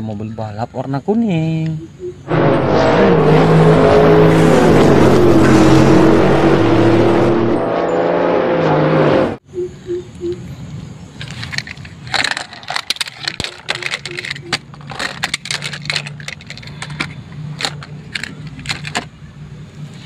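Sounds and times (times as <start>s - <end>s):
toy vehicles clattering: 11.1s - 19.4s.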